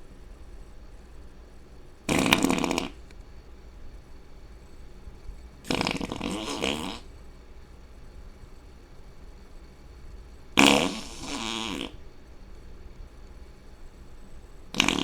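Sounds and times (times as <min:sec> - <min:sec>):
loud fart: 0:02.1 - 0:03.1, 0:05.6 - 0:07.1, 0:10.6 - 0:12.0, 0:14.7 - 0:15.0.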